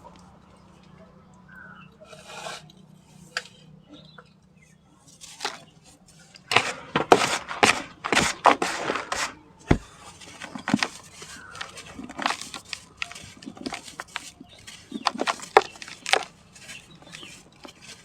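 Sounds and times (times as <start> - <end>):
sand-cement chunks crumbling: 5.2 - 5.8, 6.4 - 18.0.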